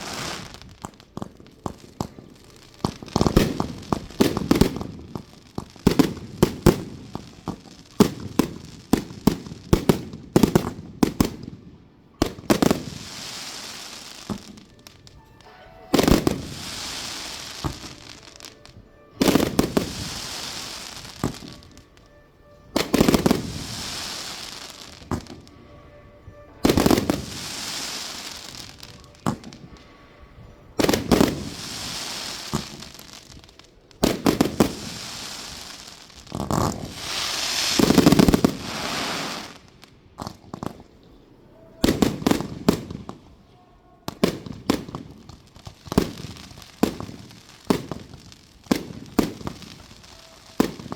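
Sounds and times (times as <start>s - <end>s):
firework crackling: 0.0s - 43.4s, 44.1s - 50.9s
firework shells bursting: 12.2s - 25.8s, 30.8s - 40.9s.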